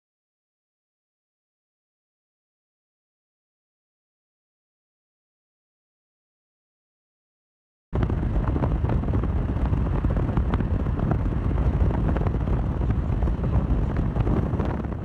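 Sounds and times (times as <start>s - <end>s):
wind buffeting microphone: 8.0s - 15.0s.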